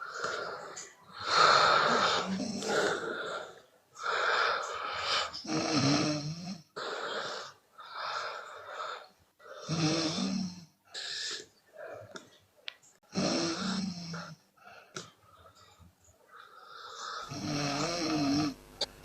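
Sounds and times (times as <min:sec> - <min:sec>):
woman snoring: 0:00.0 - 0:10.7, 0:13.1 - 0:14.4, 0:16.6 - 0:19.0.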